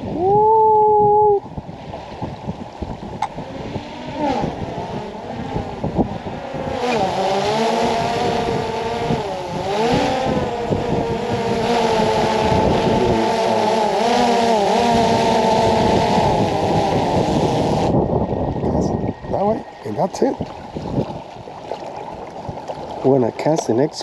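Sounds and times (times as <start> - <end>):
drone propellers whining: 0.0 - 23.9.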